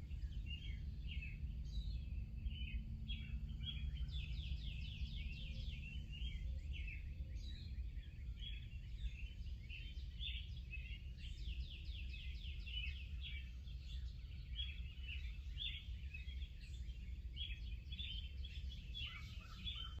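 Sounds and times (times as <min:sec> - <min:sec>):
low rumble of wind: 0:00.0 - 0:20.0
small birds chirping and trilling: 0:00.0 - 0:20.0.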